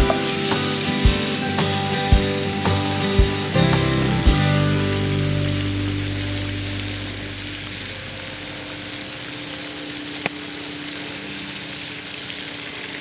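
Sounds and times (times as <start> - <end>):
low hum: 3.8 - 9.3.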